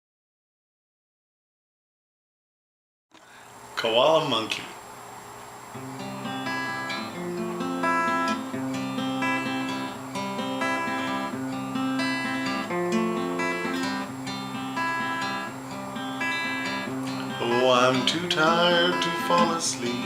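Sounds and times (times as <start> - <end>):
acoustic guitar strumming chords: 5.8 - 20.0.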